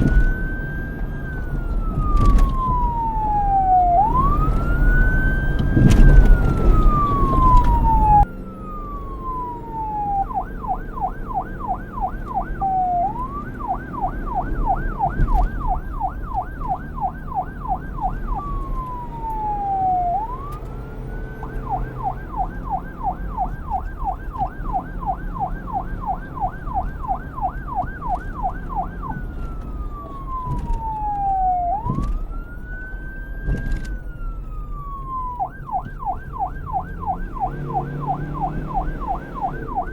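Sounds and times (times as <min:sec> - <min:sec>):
police siren wailing and yelping: 0:00.0 - 0:39.9.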